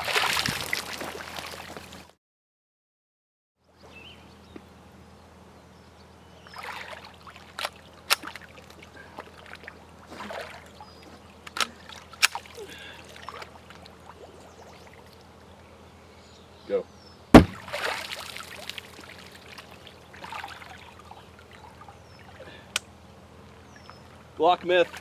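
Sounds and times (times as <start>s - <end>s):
water sloshing and splashing: 0.0s - 2.1s, 6.5s - 15.4s, 17.4s - 22.5s, 23.8s - 25.0s
sharp knocks: 17.4s - 17.7s.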